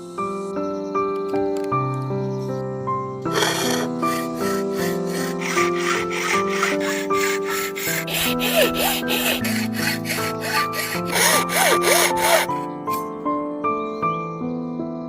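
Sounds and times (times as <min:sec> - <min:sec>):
soft background music: 0:00.0 - 0:15.0
hand tool rasping on wood: 0:03.3 - 0:12.6.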